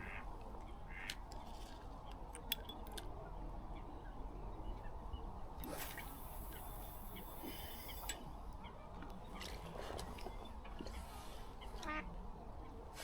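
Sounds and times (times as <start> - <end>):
outdoor background hum: 0.0 - 13.0.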